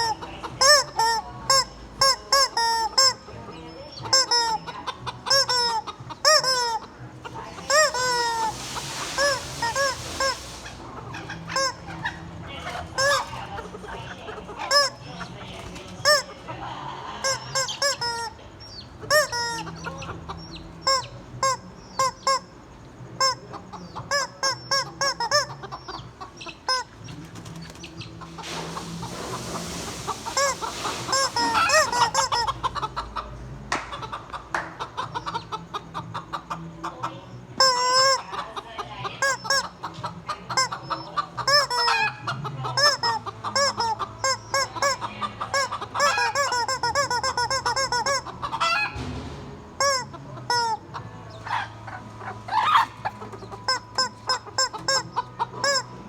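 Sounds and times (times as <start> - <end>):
chickens clucking: 0.0 - 56.0
hissing noise: 7.8 - 11.0, 28.3 - 32.4.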